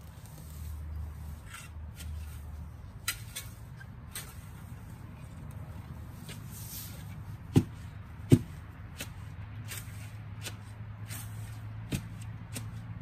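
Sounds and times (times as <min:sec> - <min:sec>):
hand tool hacking grass: 0:06.2 - 0:13.0.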